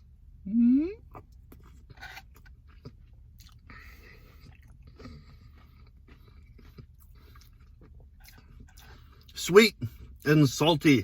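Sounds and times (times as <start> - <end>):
chewing and crunching: 1.0 - 10.3.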